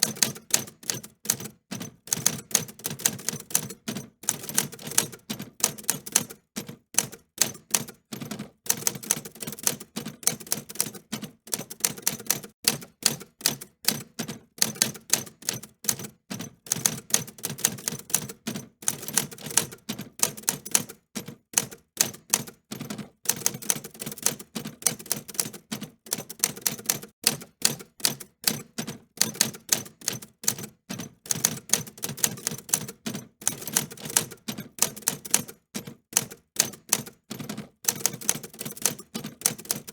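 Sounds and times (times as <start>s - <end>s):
typewriter keys clicking: 0.0s - 16.1s, 16.7s - 21.0s, 23.3s - 39.9s.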